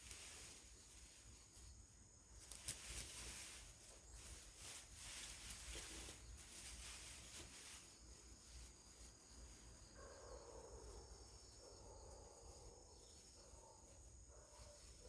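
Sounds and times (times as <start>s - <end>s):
rustling hiss: 0.0s - 15.0s.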